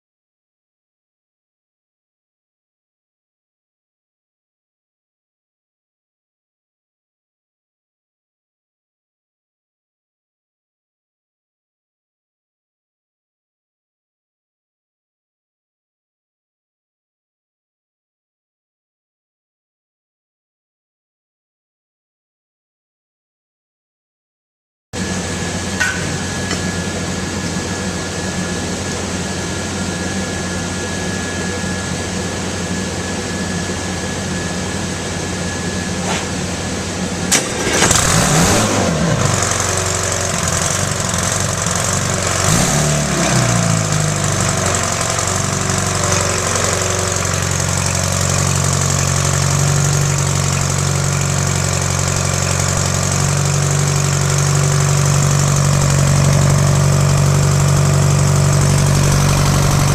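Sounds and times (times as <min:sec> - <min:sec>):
diesel engine running: 0:25.0 - 0:59.9.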